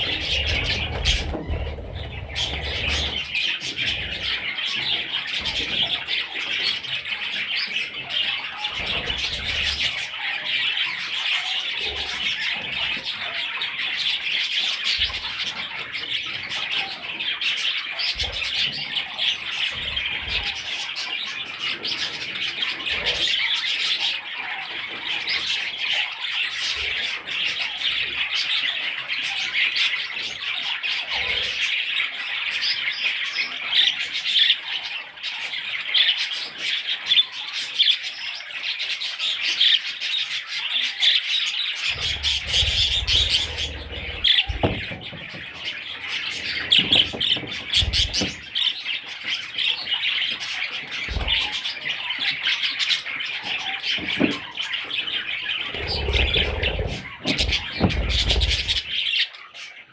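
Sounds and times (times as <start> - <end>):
budgerigars chirping: 0.0 - 59.9
low thumps: 41.9 - 45.6.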